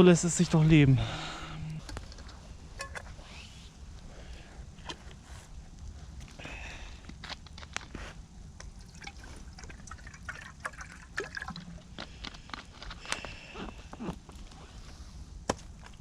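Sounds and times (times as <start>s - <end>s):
campfire crackling and popping: 5.6s - 10.6s.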